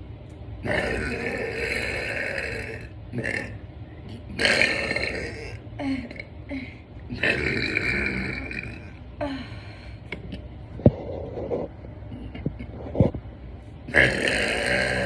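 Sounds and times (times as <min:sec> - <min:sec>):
woman burping: 0:04.4 - 0:09.6.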